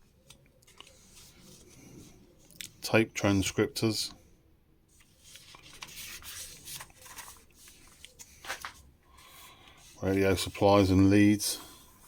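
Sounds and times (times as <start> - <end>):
magazine pages rustling: 0.2 - 2.2, 5.0 - 12.0.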